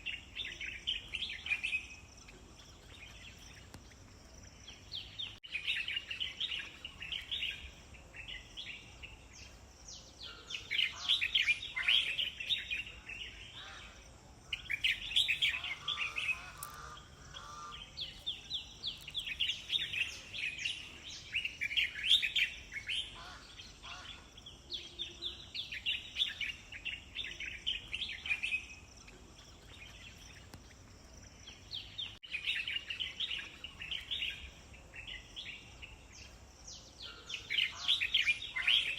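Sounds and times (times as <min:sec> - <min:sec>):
songbirds chirping: 0:00.0 - 0:38.9.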